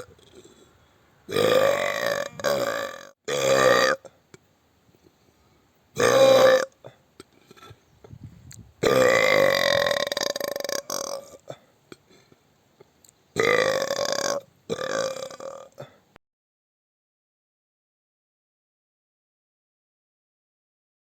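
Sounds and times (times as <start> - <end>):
loud burps: 1.3 - 4.1, 6.0 - 6.8, 8.8 - 11.6, 13.4 - 16.0.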